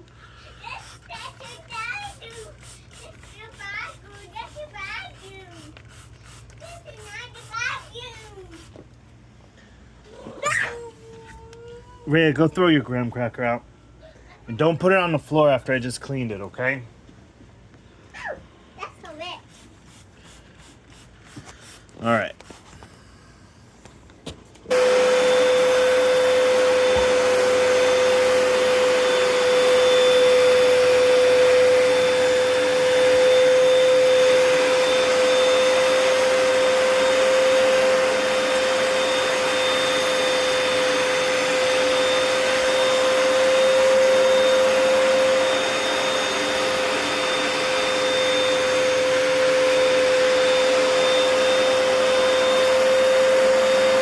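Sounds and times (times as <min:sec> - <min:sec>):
carpet cleaner motor running: 0:00.0 - 0:04.9, 0:24.7 - 0:54.0.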